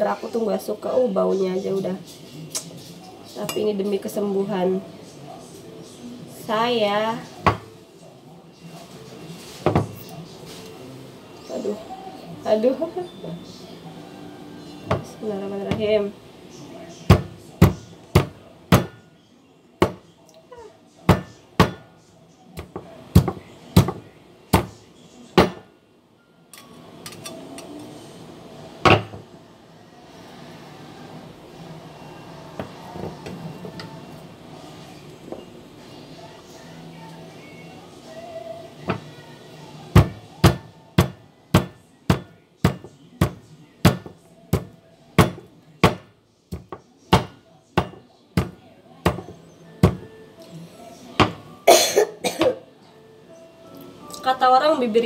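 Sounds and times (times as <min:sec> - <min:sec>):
sharp knocks of food preparation: 0:17.1 - 0:19.0, 0:19.8 - 0:20.1, 0:21.1 - 0:21.9, 0:22.6 - 0:24.8, 0:25.4 - 0:25.6, 0:39.9 - 0:50.1.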